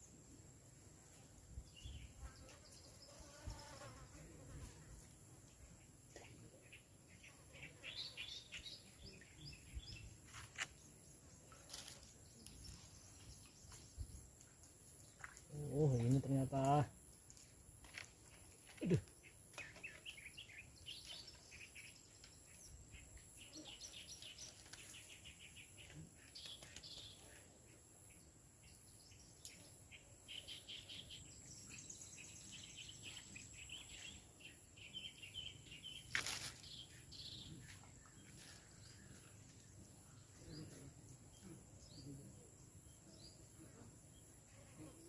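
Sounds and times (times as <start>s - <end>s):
high insect buzz: 2.0s - 4.8s, 35.7s - 37.1s
small birds chirping: 5.5s - 45.0s.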